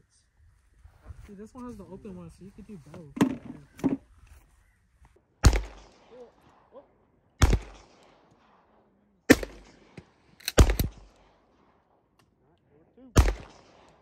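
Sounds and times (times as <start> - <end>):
gunshots with short echo: 5.4 - 6.7, 7.4 - 8.7, 9.3 - 11.8, 13.1 - 14.0.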